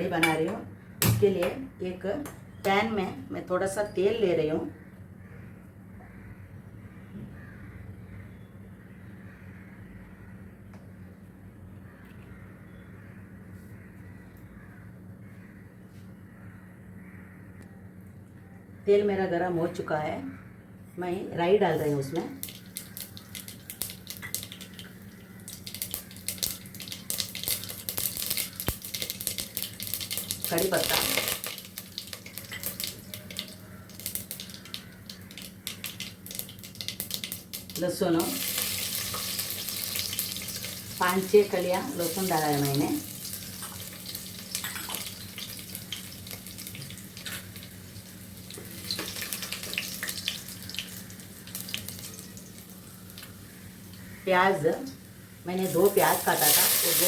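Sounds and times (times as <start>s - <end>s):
steady low hum: 0.0s - 38.8s, 40.4s - 56.6s
seeds popping in hot oil: 22.1s - 54.3s, 55.6s - 57.0s.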